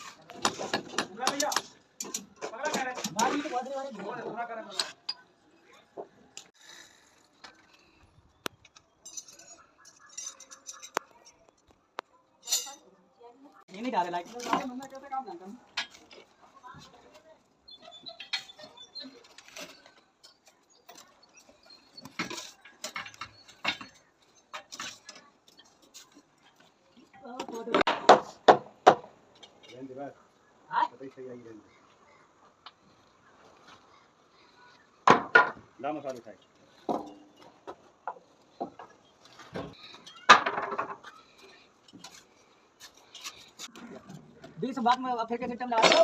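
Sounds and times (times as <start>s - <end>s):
taps and scrapes on masonry: 0.0s - 5.3s.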